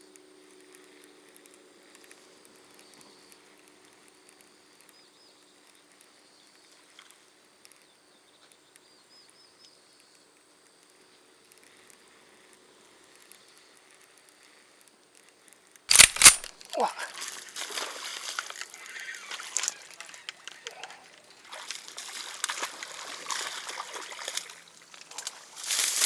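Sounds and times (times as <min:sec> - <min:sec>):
soft ticks: 0:00.0 - 0:16.6.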